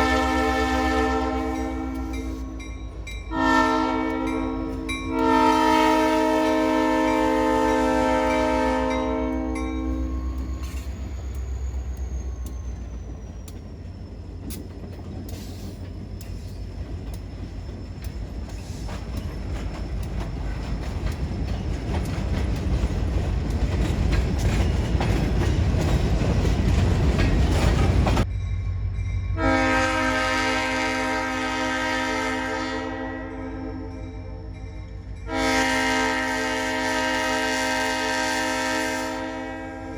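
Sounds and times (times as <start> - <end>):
locomotive air horn blast: 0.0 - 2.6, 3.3 - 10.8, 29.4 - 34.4, 35.3 - 39.9
freight train rumbling: 0.0 - 39.9
wheels clicking over rails: 10.2 - 28.3.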